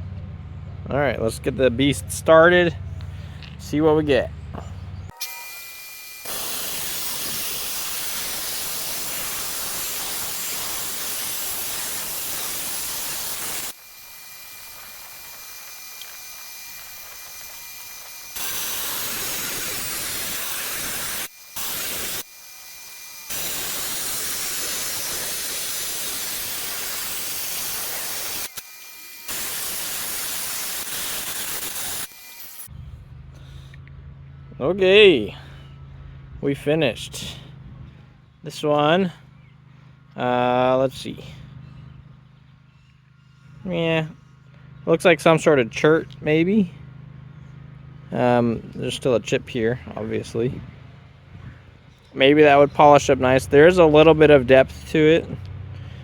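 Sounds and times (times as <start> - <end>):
rock saw cutting rock: 5.1 - 32.7, 52.0 - 55.1.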